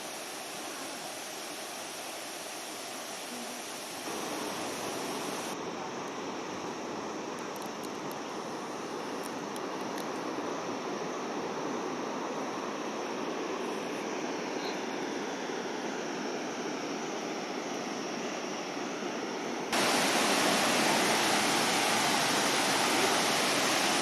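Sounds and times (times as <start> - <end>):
waterfall crashing: 0.0 - 5.6, 19.8 - 24.0.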